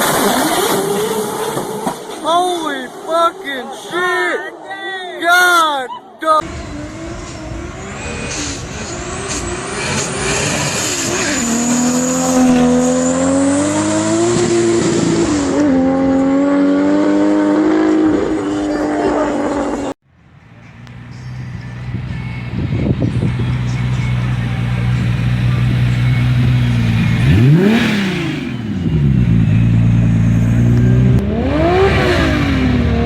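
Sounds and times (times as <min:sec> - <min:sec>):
car engine revving high: 0:00.0 - 0:03.9, 0:06.4 - 0:20.0, 0:20.8 - 0:33.0
another engine rising: 0:19.4 - 0:33.0.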